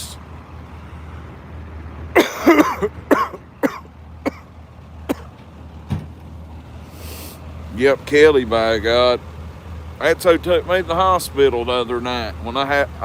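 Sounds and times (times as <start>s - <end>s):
person coughing: 2.2s - 4.5s, 5.1s - 5.3s.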